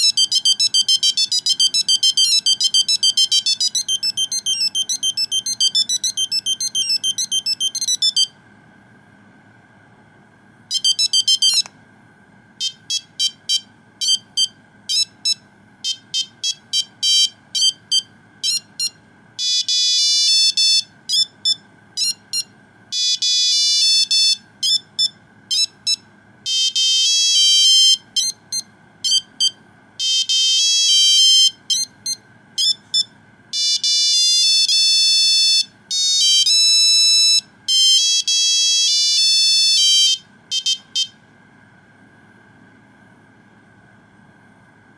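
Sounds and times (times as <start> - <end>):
mobile phone ringtone beeps: 0.0 - 8.3, 10.7 - 11.7, 12.6 - 41.1.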